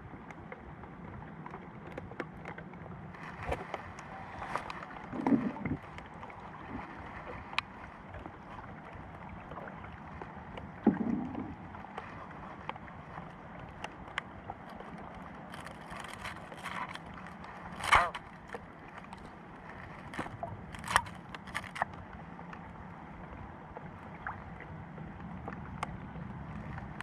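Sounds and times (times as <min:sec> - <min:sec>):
light ticks: 0:25.1 - 0:27.0.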